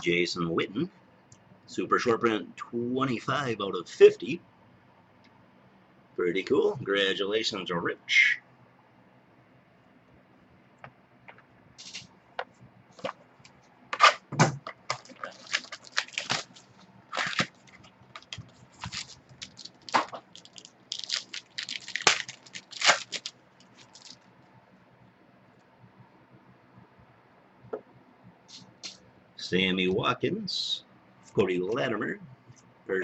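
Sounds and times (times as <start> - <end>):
foil wrappers crinkling and tearing: 14.9 - 24.3.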